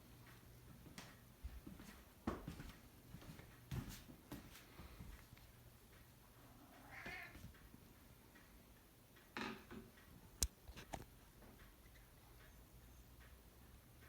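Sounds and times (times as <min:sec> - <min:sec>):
cat meowing: 0:06.6 - 0:07.4.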